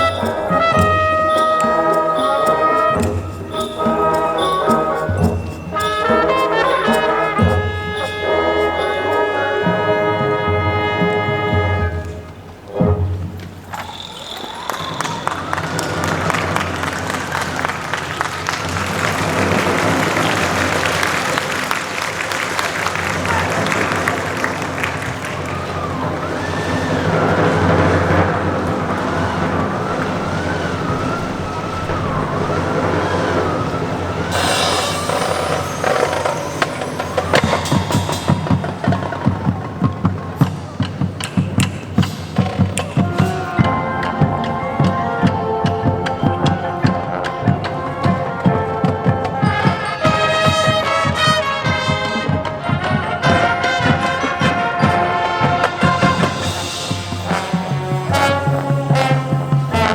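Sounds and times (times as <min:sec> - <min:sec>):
drumline beat: 0:00.0 - 0:11.3, 0:14.5 - 0:59.9
siren wailing: 0:00.0 - 0:12.0, 0:13.7 - 0:40.4, 0:55.8 - 0:59.9
marching band brass: 0:00.0 - 0:59.9
low din: 0:14.9 - 0:47.8.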